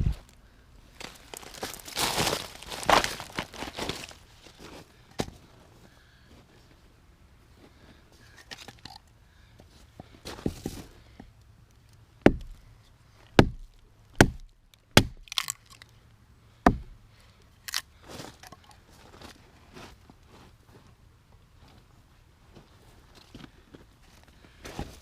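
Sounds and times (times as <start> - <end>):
axe chopping wood: 12.2 - 12.6, 13.4 - 15.6, 16.6 - 17.0.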